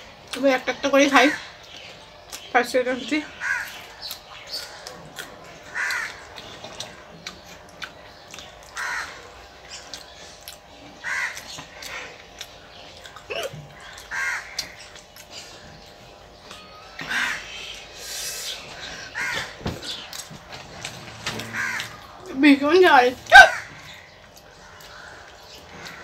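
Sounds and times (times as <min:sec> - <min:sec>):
crow cawing: 0:03.4 - 0:03.8, 0:05.7 - 0:06.3, 0:08.8 - 0:09.3, 0:11.0 - 0:12.1, 0:13.8 - 0:14.8, 0:17.0 - 0:17.8, 0:19.0 - 0:19.6, 0:21.4 - 0:22.1, 0:23.3 - 0:26.0
person chewing: 0:03.6 - 0:18.8.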